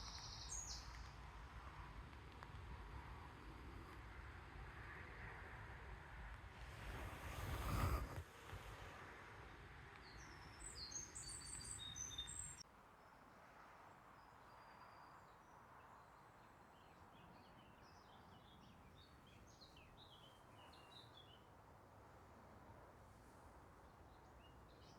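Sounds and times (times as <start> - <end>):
small birds chirping: 0.0 - 1.2, 10.0 - 12.6, 14.2 - 21.6, 23.7 - 24.9.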